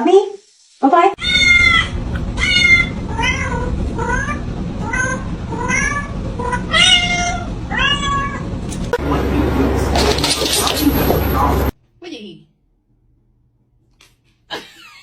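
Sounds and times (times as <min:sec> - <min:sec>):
cat meowing: 0:01.2 - 0:08.5
low background hum: 0:01.2 - 0:15.0.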